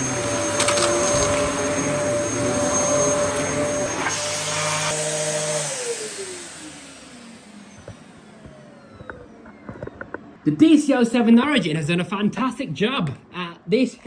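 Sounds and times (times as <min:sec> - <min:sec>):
motor winding down whine: 0:00.0 - 0:10.1
vacuum cleaner running: 0:00.0 - 0:10.1.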